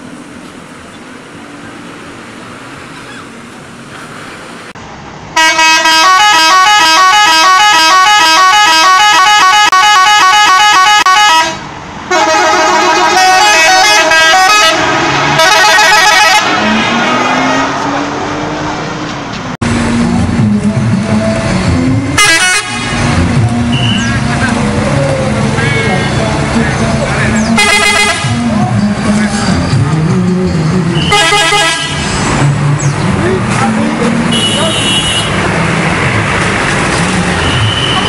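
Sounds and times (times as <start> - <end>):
street noise: 0.0 - 38.0
bus musical horn playing a tune: 5.4 - 16.6, 22.1 - 24.1, 25.6 - 26.4, 27.6 - 28.5, 30.9 - 32.1, 34.3 - 35.4.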